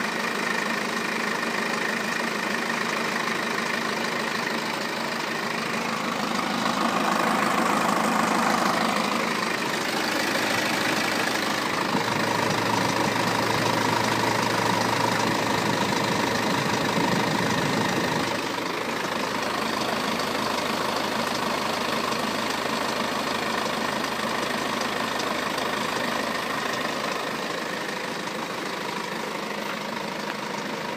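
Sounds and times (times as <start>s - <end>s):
diesel engine running: 0.0s - 30.9s.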